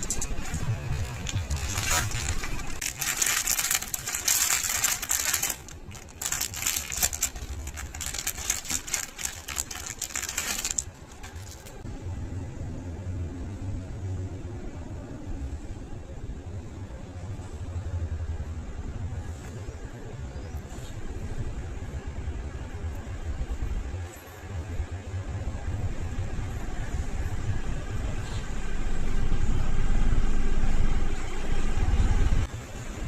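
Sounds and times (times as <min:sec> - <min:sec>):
packaging rustling: 0:00.0 - 0:11.8
small hard items clinking: 0:00.0 - 0:11.8
low rumble: 0:00.0 - 0:19.8.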